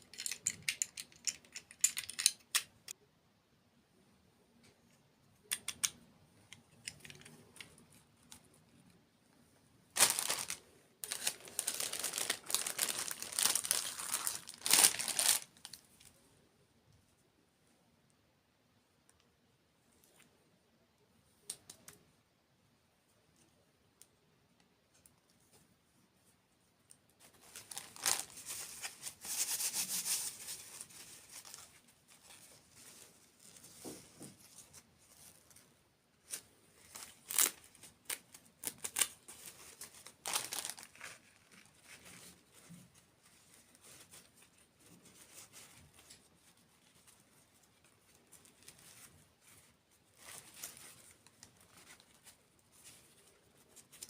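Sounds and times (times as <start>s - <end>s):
desserts crinkling and crackling: 9.9s - 16.2s, 27.2s - 54.0s.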